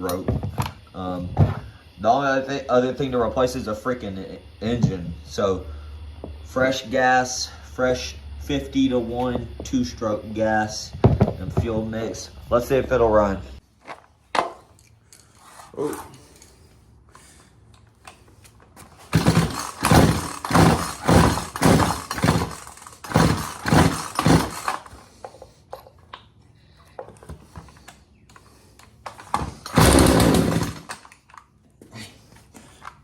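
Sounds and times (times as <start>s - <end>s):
chainsaw being pull-started: 18.8s - 25.5s, 29.1s - 31.4s.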